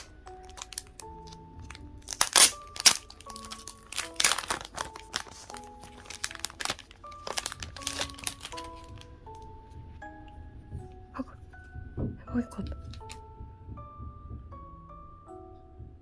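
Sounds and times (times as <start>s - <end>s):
packaging crinkling: 0.0s - 9.5s
soft background music: 0.0s - 16.0s.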